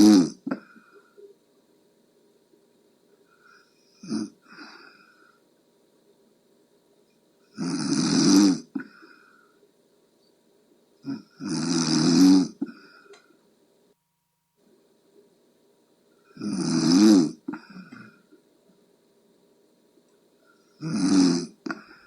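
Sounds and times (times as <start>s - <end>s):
person snoring: 0.0s - 1.2s, 3.4s - 5.4s, 7.5s - 9.5s, 11.0s - 13.1s, 16.2s - 18.3s, 20.5s - 22.0s.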